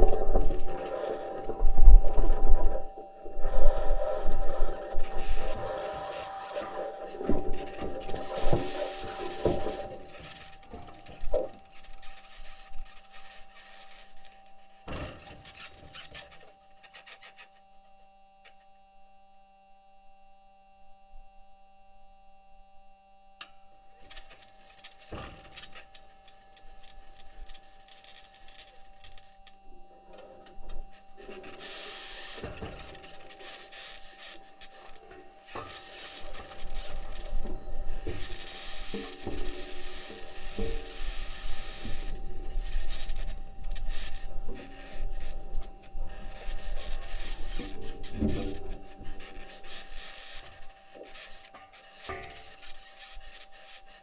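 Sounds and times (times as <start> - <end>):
wheels grinding and crunching: 0.0 - 14.2, 24.0 - 52.8
high-pitched scratching: 0.0 - 17.5, 30.2 - 54.0.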